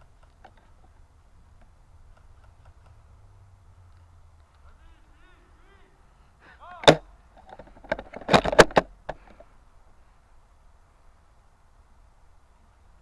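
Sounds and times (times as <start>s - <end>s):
rifle bolt clicks and knocks: 6.8s - 9.4s.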